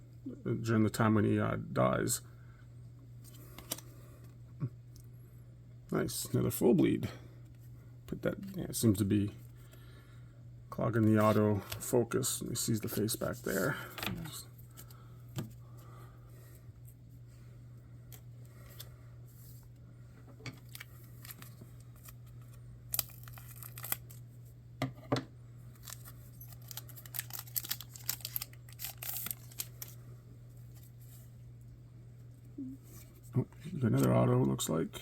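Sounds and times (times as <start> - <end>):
steady low hum: 0.0 - 35.0
cards clicking and rustling: 3.3 - 3.9, 20.5 - 24.2, 25.8 - 30.0.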